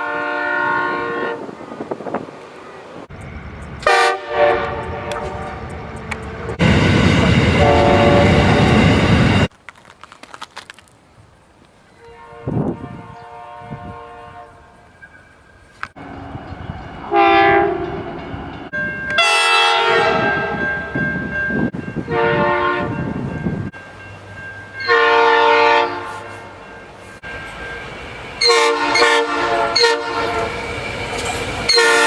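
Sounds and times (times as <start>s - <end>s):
train horn blasts: 0.0s - 1.5s, 3.8s - 8.9s, 12.0s - 14.9s, 16.0s - 20.7s, 22.0s - 23.0s, 24.8s - 26.6s, 28.4s - 30.6s, 31.6s - 32.0s
rolling train rumble: 0.0s - 9.6s, 11.0s - 32.0s.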